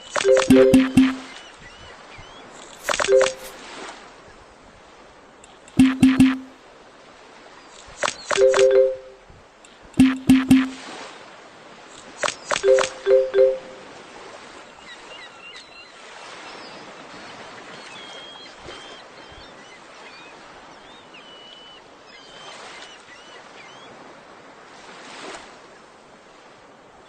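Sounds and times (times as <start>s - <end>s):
short high chirps: 0.2s - 1.4s, 2.9s - 3.6s, 5.8s - 6.5s, 8.3s - 9.2s, 10.0s - 10.8s, 12.6s - 13.8s.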